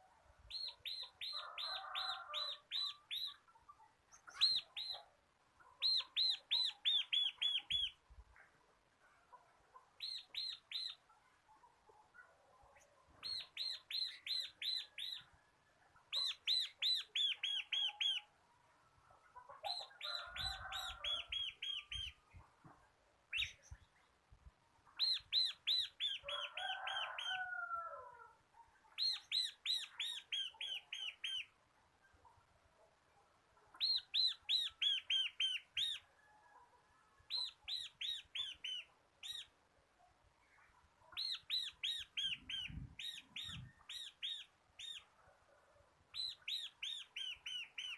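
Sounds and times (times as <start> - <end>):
soft low bird chirps: 9.9 - 11.4, 40.4 - 45.2, 46.1 - 47.9.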